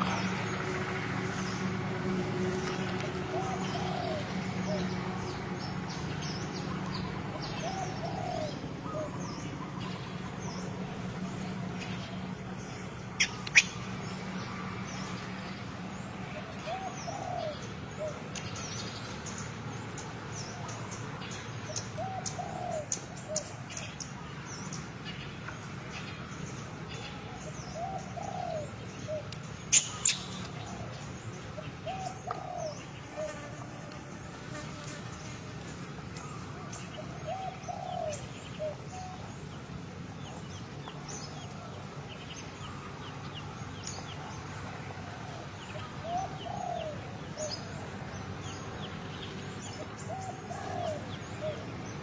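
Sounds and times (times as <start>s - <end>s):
bird cooing: 3.2s - 5.1s, 7.5s - 10.0s, 16.4s - 18.2s, 22.0s - 23.4s, 27.8s - 29.3s, 31.8s - 33.7s, 37.0s - 39.2s, 45.0s - 47.6s, 50.0s - 51.7s.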